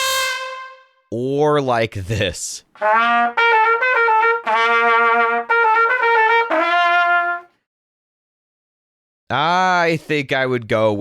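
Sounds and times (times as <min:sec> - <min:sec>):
trumpet notes: 0:00.0 - 0:01.1, 0:02.8 - 0:07.6.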